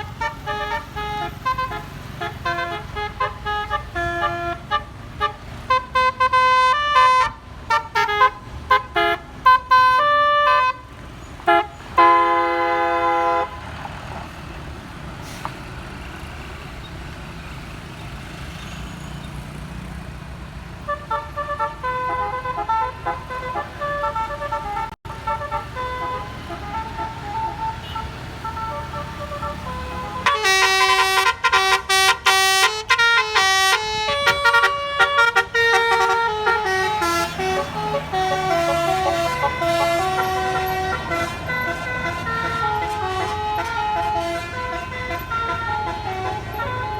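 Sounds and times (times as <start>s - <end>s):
musical bus horns playing tunes: 0.0s - 14.1s, 15.0s - 15.5s, 20.8s - 46.9s
engine and road noise: 0.0s - 46.9s.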